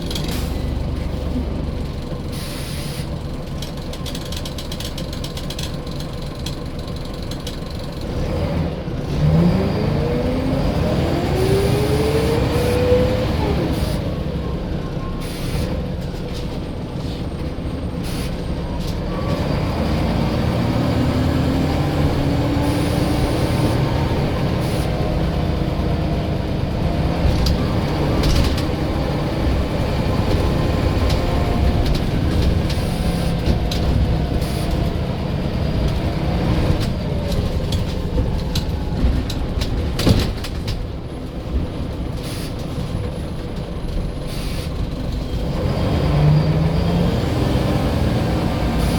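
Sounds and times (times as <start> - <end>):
bus engine running: 0.0 - 48.9
bodywork rattles and knocks: 36.8 - 41.7.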